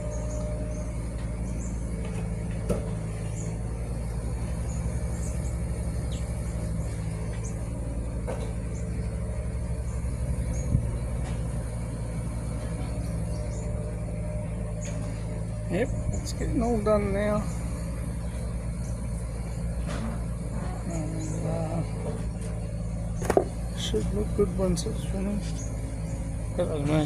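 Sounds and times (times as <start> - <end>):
engine running steadily: 0.0 - 27.0
sharp knocks: 23.2 - 23.6.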